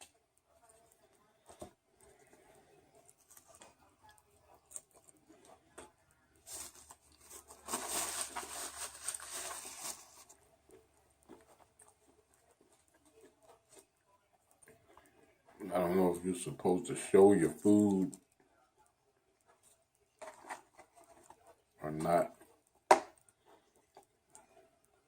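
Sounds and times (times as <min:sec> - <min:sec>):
eating clicks and mouth noises: 0:00.0 - 0:07.2
paper wrapper rustling and tearing: 0:06.4 - 0:10.4.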